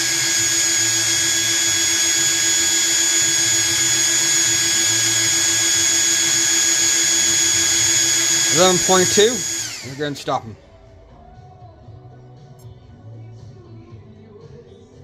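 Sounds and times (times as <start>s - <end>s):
electric ducted fans whining: 0.0s - 10.5s.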